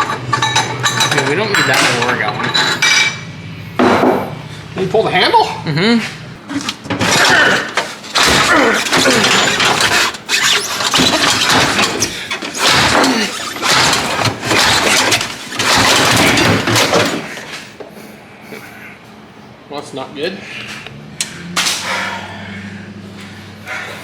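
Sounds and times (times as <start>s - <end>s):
scraping and creaking: 0.0s - 3.2s, 6.4s - 17.8s
metal squeals: 7.0s - 17.5s.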